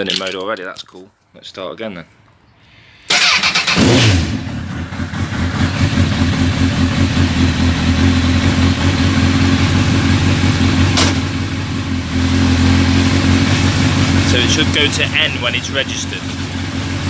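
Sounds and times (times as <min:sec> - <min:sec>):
motorcycle engine idling: 0:04.3 - 0:17.0.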